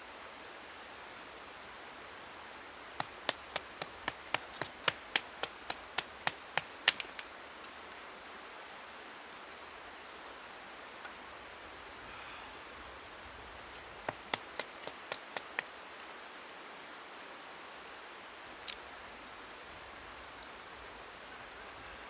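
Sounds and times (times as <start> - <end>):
river water hissing: 0.0 - 22.0
sharp snaps or clicks: 3.0 - 7.3, 14.1 - 15.7, 18.6 - 18.9.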